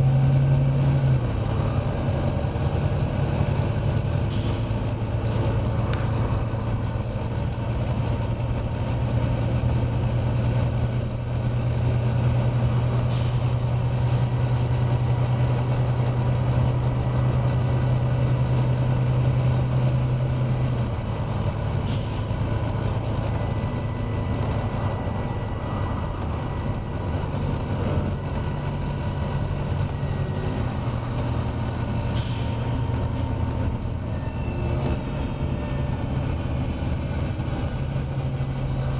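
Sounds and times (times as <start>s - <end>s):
bus diesel engine running: 0.0s - 38.9s
air brake hiss: 4.2s - 5.6s, 13.1s - 13.6s, 21.8s - 22.4s, 32.2s - 33.4s.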